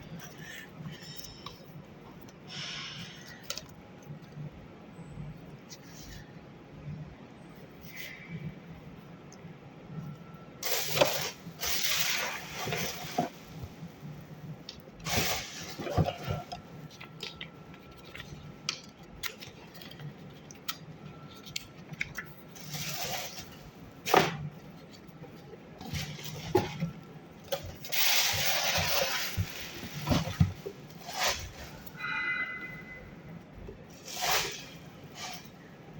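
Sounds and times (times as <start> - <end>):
packaging rustling and scraping: 10.6 - 32.9, 33.8 - 35.9.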